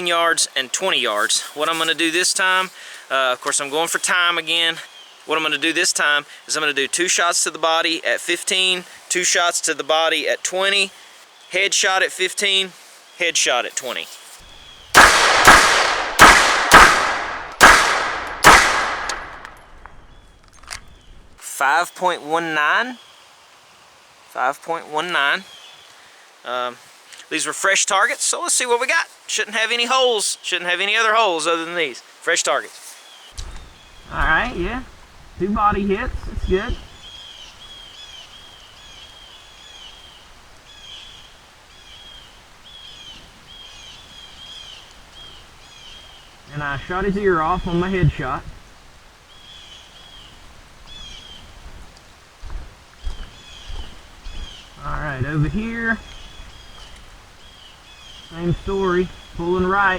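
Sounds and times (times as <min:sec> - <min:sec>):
faint outdoor hush: 0:00.0 - 0:59.9
pistol shots with echo: 0:14.9 - 0:19.6.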